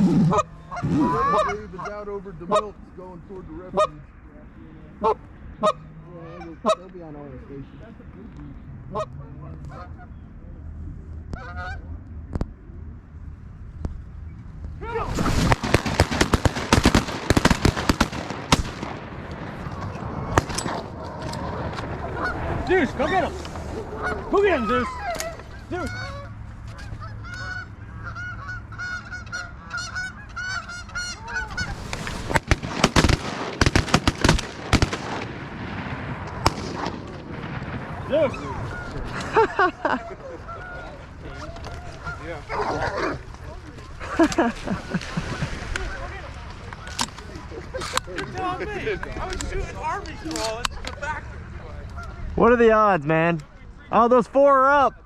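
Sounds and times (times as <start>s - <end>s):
geese honking: 0.0s - 2.8s, 3.7s - 4.0s, 5.0s - 6.9s, 8.9s - 10.3s, 11.3s - 12.0s, 21.2s - 34.9s, 38.0s - 51.0s, 51.7s - 52.6s
loud sharp bangs: 15.0s - 25.6s, 31.4s - 39.8s.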